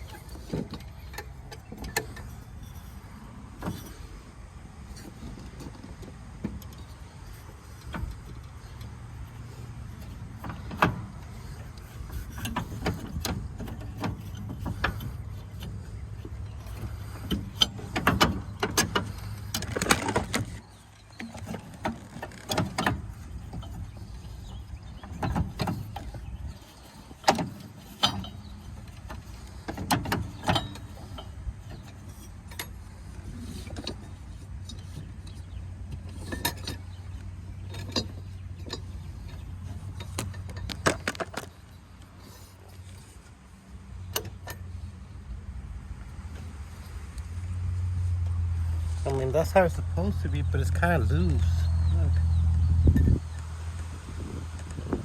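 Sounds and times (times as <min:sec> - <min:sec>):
tools and parts clinking: 0:00.0 - 0:04.2, 0:05.0 - 0:43.2.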